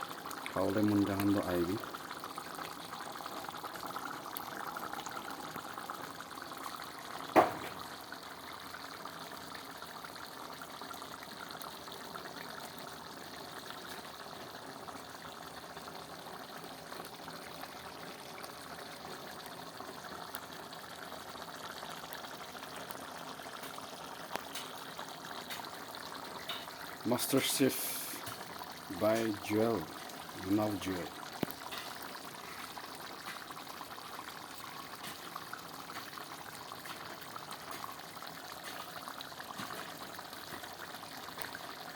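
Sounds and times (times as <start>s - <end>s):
curry hissing in a pot: 0.0s - 41.9s
sharp knock: 7.4s - 7.7s.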